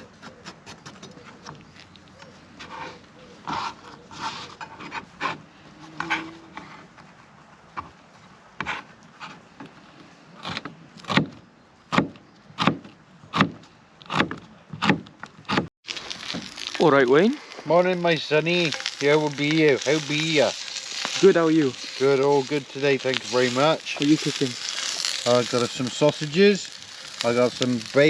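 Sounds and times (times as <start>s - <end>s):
footsteps crunching on woodland floor: 15.9s - 26.6s.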